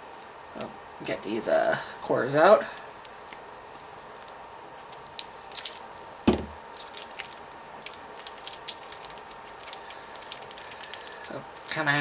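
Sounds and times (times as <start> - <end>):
plastic packaging crackling: 5.0 - 12.0
loud knock: 6.3 - 6.6.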